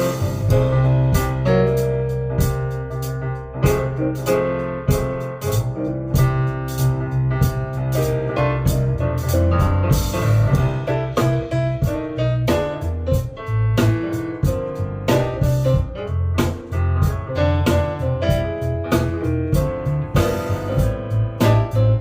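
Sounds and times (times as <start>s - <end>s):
instrumental music with piano: 0.0s - 22.0s.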